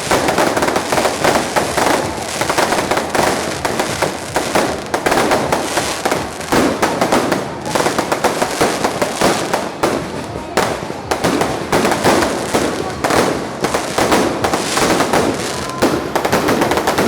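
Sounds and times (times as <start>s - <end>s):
fireworks crackling bangs: 0.0s - 17.0s.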